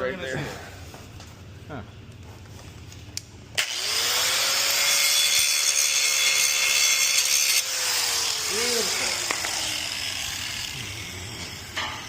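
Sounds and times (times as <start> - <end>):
angle grinder grinding metal: 3.6 - 12.0.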